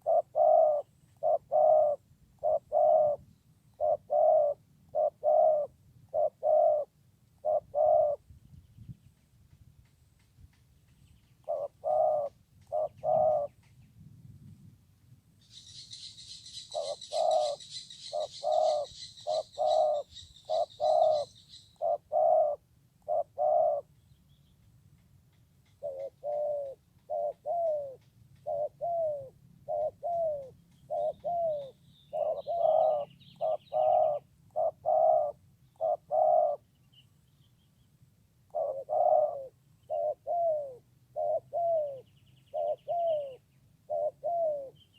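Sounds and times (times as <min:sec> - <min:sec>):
doves cooing: 0:00.0 - 0:08.3, 0:11.4 - 0:13.7, 0:16.4 - 0:23.9, 0:25.6 - 0:36.7, 0:38.5 - 0:44.8.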